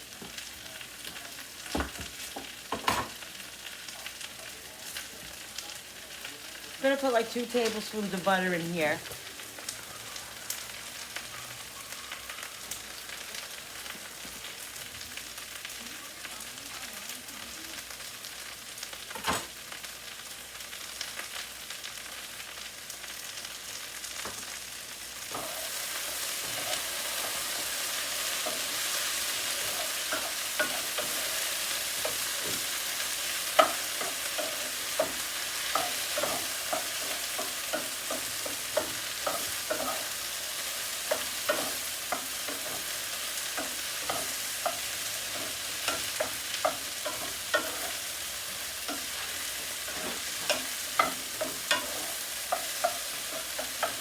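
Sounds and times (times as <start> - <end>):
mushrooms and onions sizzling: 0.0 - 54.0
utensil clicking against pan: 41.1 - 48.2, 48.8 - 54.0.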